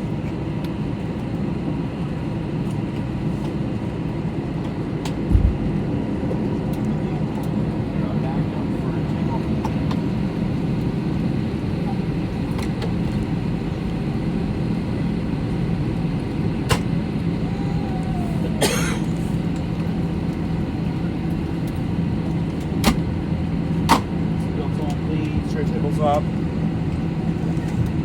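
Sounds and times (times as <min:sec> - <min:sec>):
airplane cabin drone: 0:00.0 - 0:28.0.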